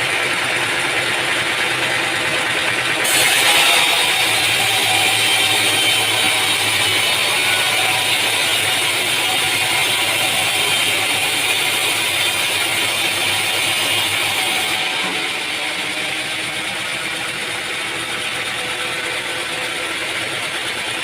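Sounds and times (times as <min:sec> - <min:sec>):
low machine hum: 0:00.0 - 0:13.1
sawmill machinery clatter and hiss: 0:00.0 - 0:21.0.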